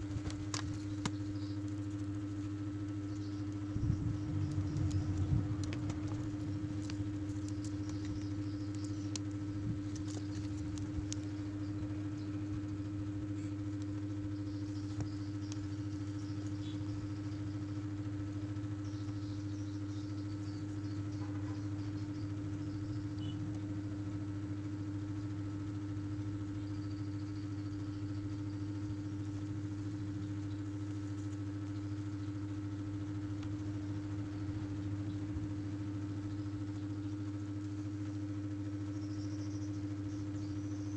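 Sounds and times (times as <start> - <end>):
low hum with held tone: 0.0 - 40.9
faint small ticks: 13.4 - 17.6.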